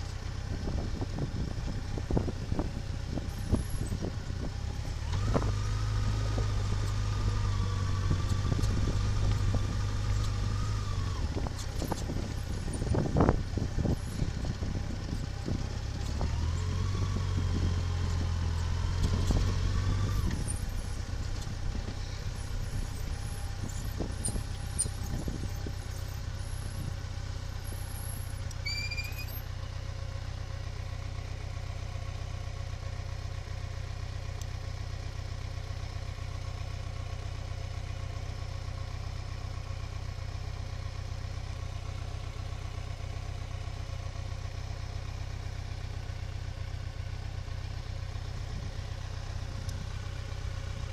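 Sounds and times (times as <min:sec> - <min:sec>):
vehicle engine running: 0:00.0 - 0:50.9.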